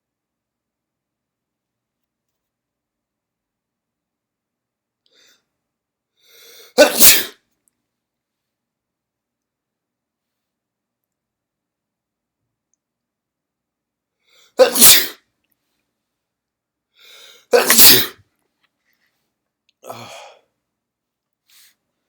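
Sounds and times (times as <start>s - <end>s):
person sneezing: 6.4s - 7.4s, 14.6s - 15.2s, 17.1s - 18.2s, 19.8s - 20.4s
breathy sound: 19.8s - 20.5s.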